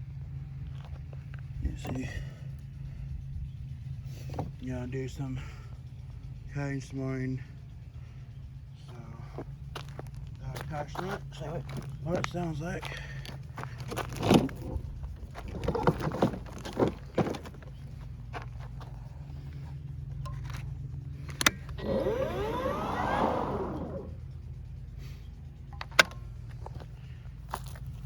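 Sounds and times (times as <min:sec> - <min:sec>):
handling clicks and knocks: 0:09.8 - 0:21.8, 0:25.7 - 0:28.0
electric motor whirring: 0:21.3 - 0:24.2.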